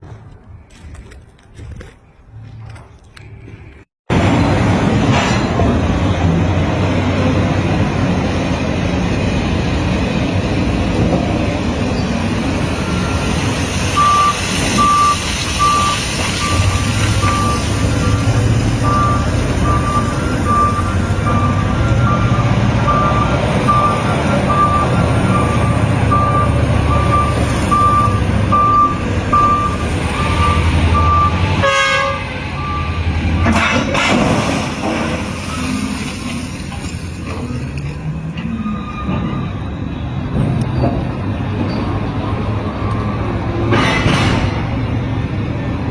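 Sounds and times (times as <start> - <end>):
heavy machine engine running: 4.1 - 31.6
reversing alarm beeping: 12.6 - 31.5, 32.5 - 33.6.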